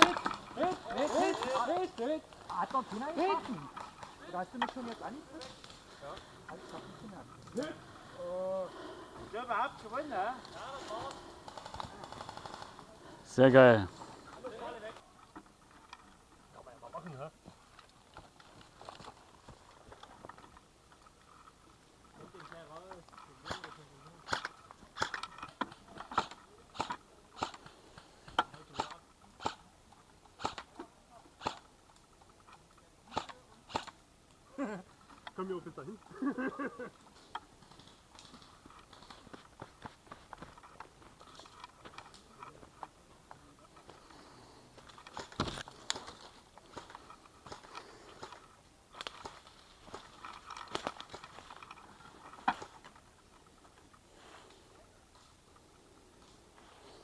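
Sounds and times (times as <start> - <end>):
footsteps crunching on forest floor: 0.0 - 14.5, 37.1 - 48.3.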